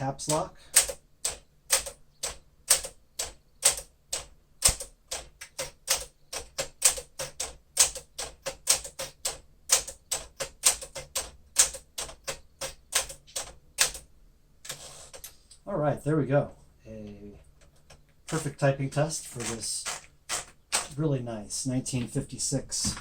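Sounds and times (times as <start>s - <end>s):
manual typewriter key strikes: 0.3s - 14.0s, 18.3s - 18.6s, 19.3s - 21.0s.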